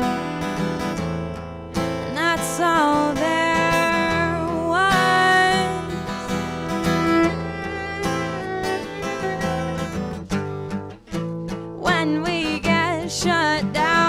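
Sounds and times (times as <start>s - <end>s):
strummed acoustic guitar: 0.0s - 14.0s
person singing: 2.1s - 9.6s, 11.8s - 14.0s.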